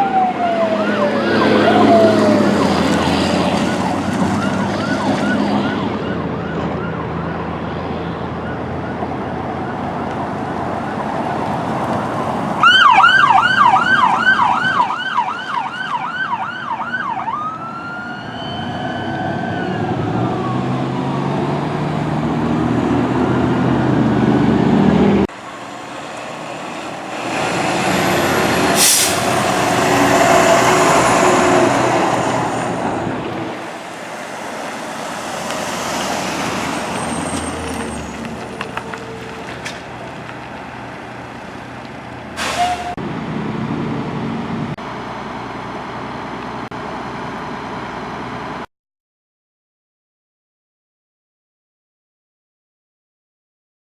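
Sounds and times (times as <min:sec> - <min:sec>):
fire truck siren: 0:00.0 - 0:46.3
diesel engine rumble: 0:00.0 - 0:48.6
short sharp hiss: 0:28.8 - 0:29.4, 0:42.4 - 0:42.9.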